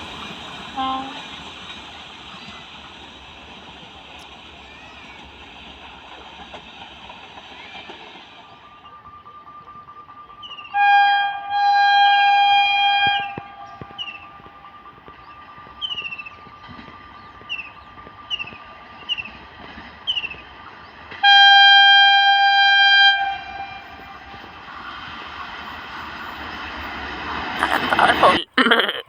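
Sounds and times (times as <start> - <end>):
locomotive horn blasts: 0.8 - 1.2, 10.7 - 14.7, 21.2 - 24.5.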